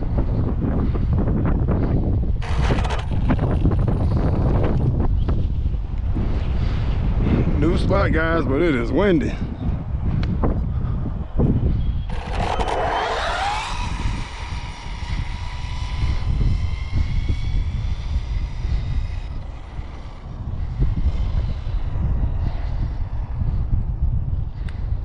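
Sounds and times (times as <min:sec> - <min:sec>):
wind buffeting microphone: 0:00.0 - 0:25.0
electric motor whine: 0:02.4 - 0:04.9, 0:12.0 - 0:23.1.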